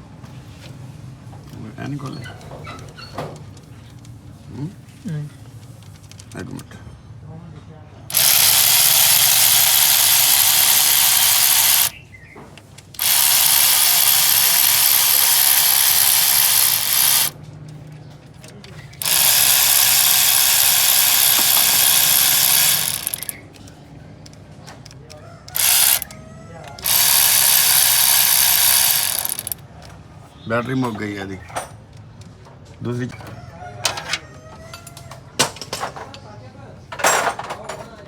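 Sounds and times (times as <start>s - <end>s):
cordless power tool running: 8.1s - 12.0s, 13.0s - 17.4s, 19.0s - 23.4s, 25.5s - 26.2s, 26.8s - 29.6s.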